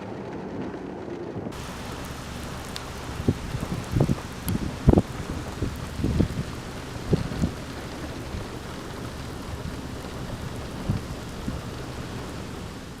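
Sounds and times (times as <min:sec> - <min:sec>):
low rumble: 0:00.0 - 0:13.0
torrential rain falling: 0:00.0 - 0:13.0.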